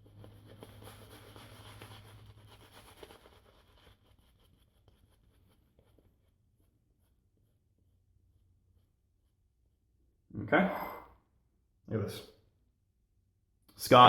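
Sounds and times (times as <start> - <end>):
shaving brush swishing lather: 0.0 - 7.8.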